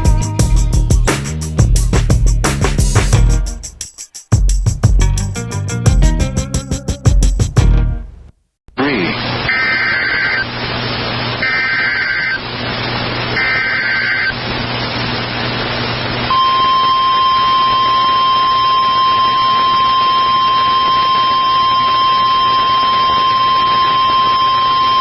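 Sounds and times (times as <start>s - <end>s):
radio hiss and hum: 8.7s - 25.0s
buzzy digital chirping: 16.3s - 25.0s
steady warning alarm tone: 16.3s - 25.0s.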